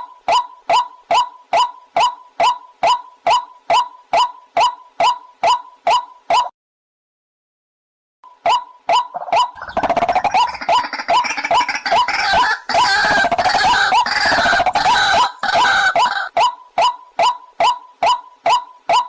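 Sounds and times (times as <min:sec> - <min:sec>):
waterhen short repeated notes: 0:00.0 - 0:06.5, 0:08.3 - 0:19.0
harsh croaking gurgling calls: 0:09.0 - 0:16.3.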